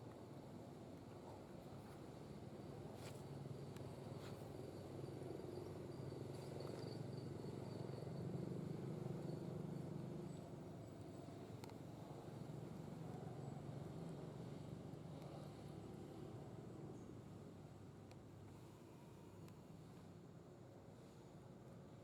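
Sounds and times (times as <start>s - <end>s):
faint insect trill: 3.8s - 11.7s.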